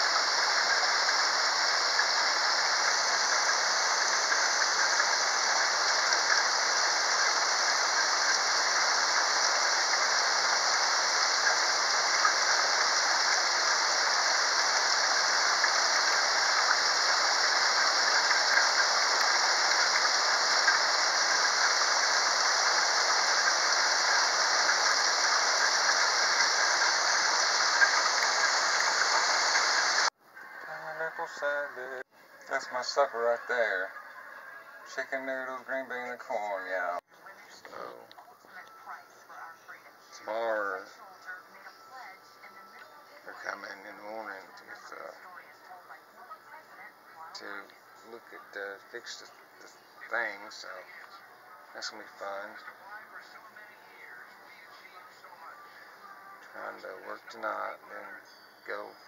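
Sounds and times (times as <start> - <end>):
rain pattering on surfaces: 0.0 - 30.1.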